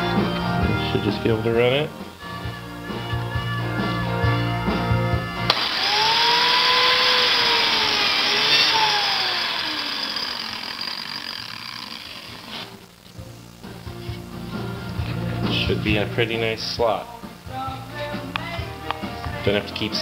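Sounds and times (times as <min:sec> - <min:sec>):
biscuit joiner motor whine: 0:05.5 - 0:12.8.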